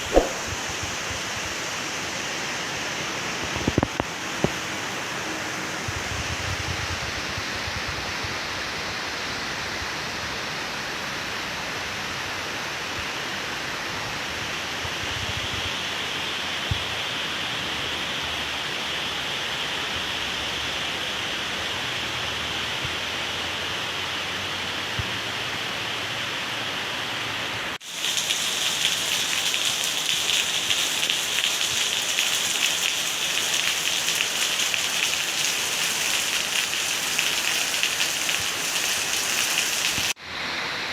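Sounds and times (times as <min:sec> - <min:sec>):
heavy rain falling: 0:27.8 - 0:40.2
raindrops pattering on surface: 0:27.8 - 0:40.2.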